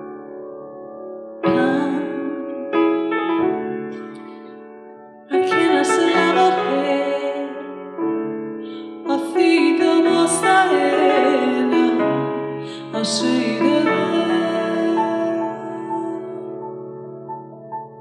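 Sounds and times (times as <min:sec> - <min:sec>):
piano chords ringing: 0:00.0 - 0:18.0.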